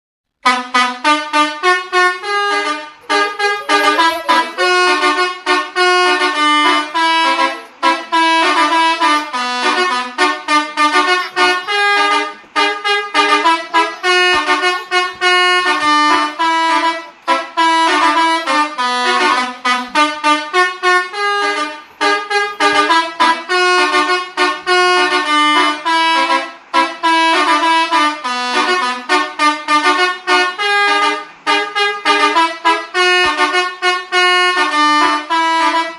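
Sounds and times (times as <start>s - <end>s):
multi-tone bus horn tune: 0.4s - 35.9s.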